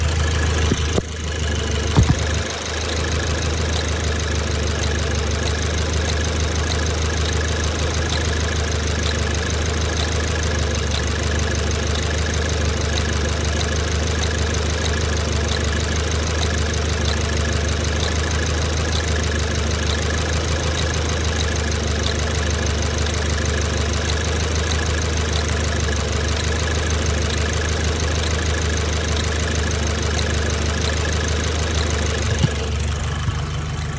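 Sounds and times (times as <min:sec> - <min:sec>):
car engine idling: 0:00.0 - 0:33.9
light engine ticking: 0:00.0 - 0:33.9
brief engine knock: 0:02.0 - 0:02.5.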